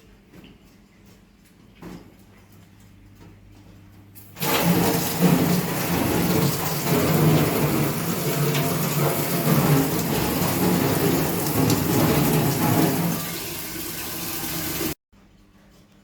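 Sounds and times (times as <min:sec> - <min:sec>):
toilet flushing: 0:04.2 - 0:15.0.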